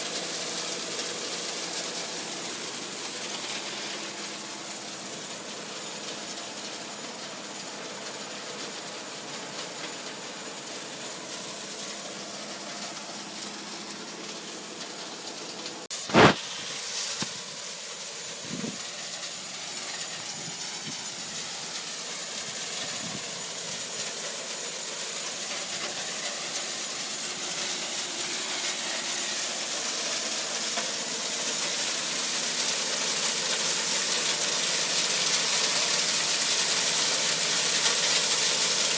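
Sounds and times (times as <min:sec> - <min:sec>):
rushing water hiss: 0:00.0 - 0:38.9
machinery noise: 0:08.4 - 0:24.3.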